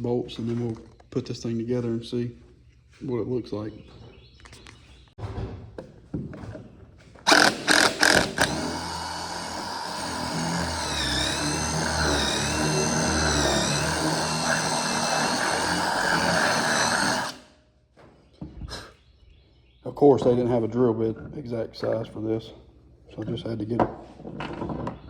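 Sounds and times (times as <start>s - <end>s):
power drill drilling: 7.3s - 17.5s.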